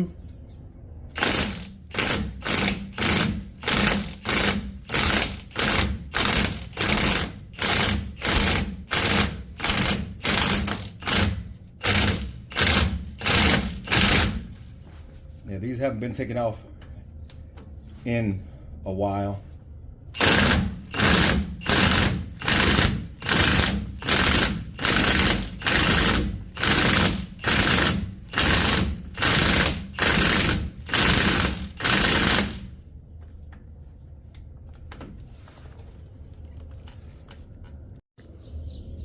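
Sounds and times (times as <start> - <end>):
impact wrench hammering: 1.2 - 14.6, 20.2 - 32.7.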